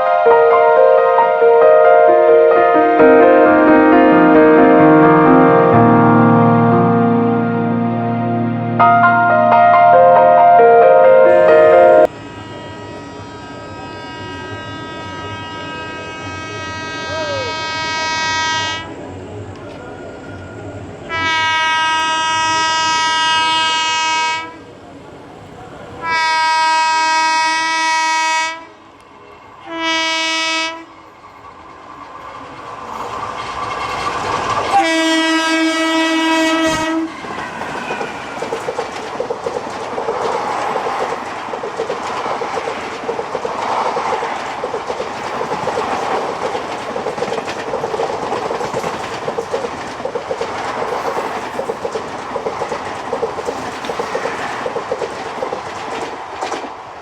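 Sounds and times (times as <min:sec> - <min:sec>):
train rushing past: 0:00.0 - 0:57.0
locomotive air horn blasts: 0:12.2 - 0:18.9, 0:21.1 - 0:24.6, 0:26.0 - 0:28.8, 0:29.6 - 0:30.9, 0:34.7 - 0:37.1
wheels clacking over rail joints: 0:36.6 - 0:56.8.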